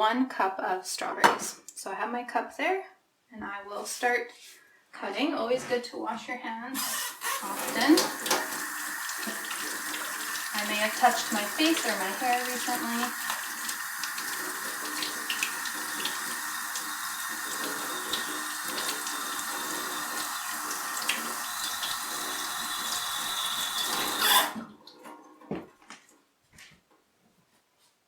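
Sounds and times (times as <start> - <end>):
tap running over washing hands: 7.5 - 24.2.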